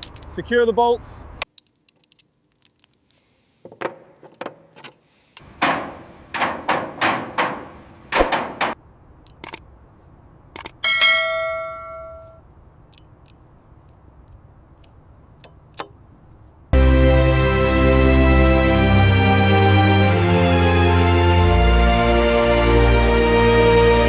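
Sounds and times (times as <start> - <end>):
metal clanks and knocks: 3.6 - 8.8
bell-like metallic ding: 10.8 - 12.4.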